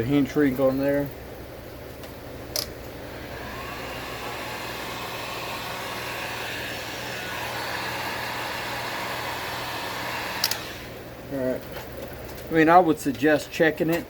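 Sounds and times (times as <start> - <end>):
heat gun blowing: 2.9 - 11.2
heat gun switch click: 10.4 - 10.7.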